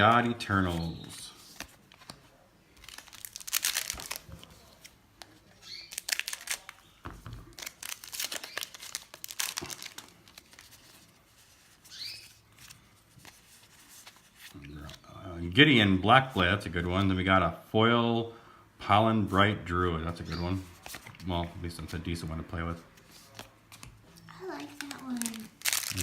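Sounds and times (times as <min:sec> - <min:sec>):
foil wrappers tearing and crinkling: 0:02.8 - 0:04.8, 0:05.6 - 0:06.9, 0:07.5 - 0:10.8, 0:24.6 - 0:26.0.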